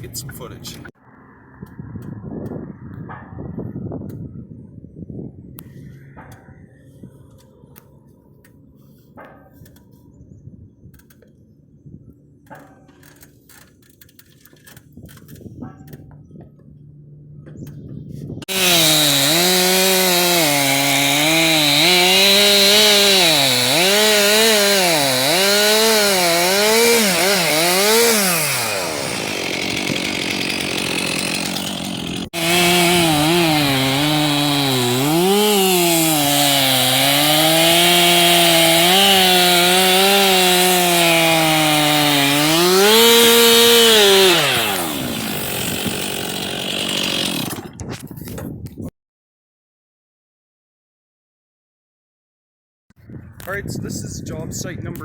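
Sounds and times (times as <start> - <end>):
chainsaw cutting wood: 18.4 - 48.4.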